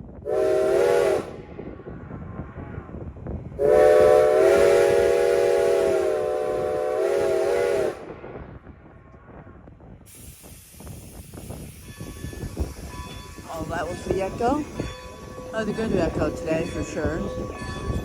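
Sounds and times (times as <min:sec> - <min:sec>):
steam whistle blast: 0:00.2 - 0:01.4, 0:03.6 - 0:08.1.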